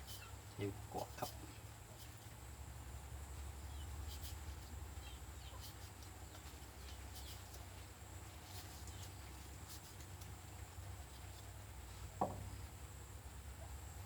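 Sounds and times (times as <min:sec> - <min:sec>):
faint bird chirps: 0:00.0 - 0:00.4, 0:03.6 - 0:07.5.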